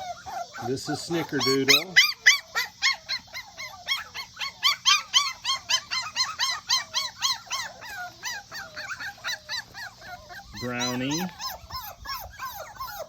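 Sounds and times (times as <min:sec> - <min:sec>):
puppies whimpering: 0:00.0 - 0:13.0.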